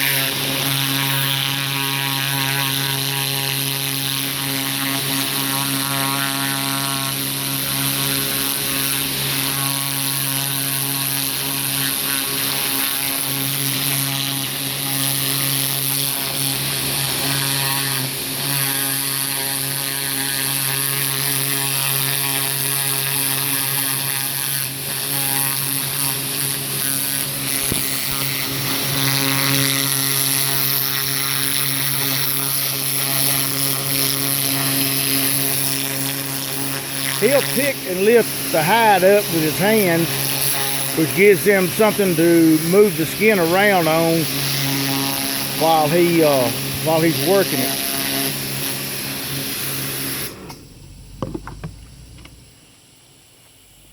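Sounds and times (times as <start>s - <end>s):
pressure washer pump hum: 0.0s - 53.9s
water jet hissing: 27.3s - 53.9s.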